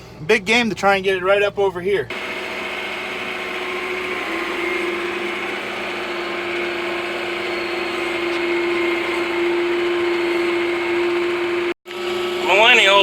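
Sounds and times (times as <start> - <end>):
starter motor cranking: 2.1 - 11.7.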